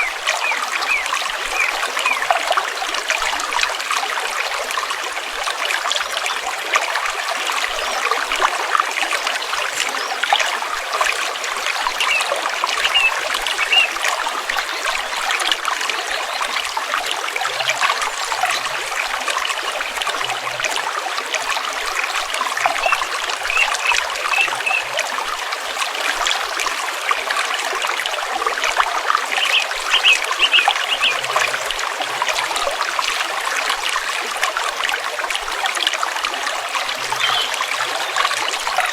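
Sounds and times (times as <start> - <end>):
stream water flowing over rocks: 0.0 - 38.9
high bird chirps: 12.8 - 13.9, 23.6 - 24.9, 29.4 - 31.3.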